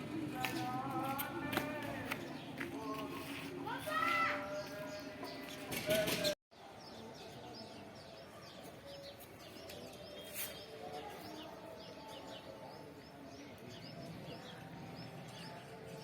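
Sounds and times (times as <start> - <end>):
small birds chirping: 6.6 - 16.0.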